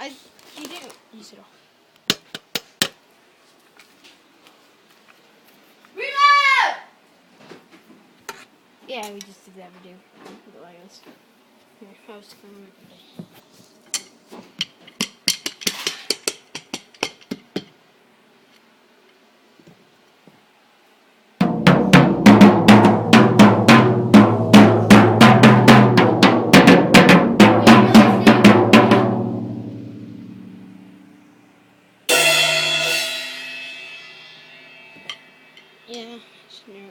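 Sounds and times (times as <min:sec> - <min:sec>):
snare drum hits: 0:21.4 - 0:30.7.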